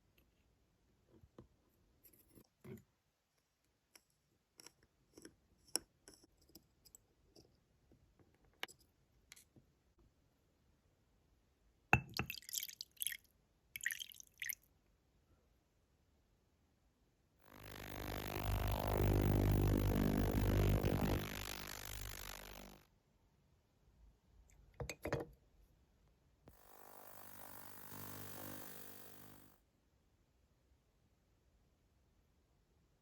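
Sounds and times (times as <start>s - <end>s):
hissy scratchy noise bursts: 17.5s - 22.8s, 26.6s - 29.5s.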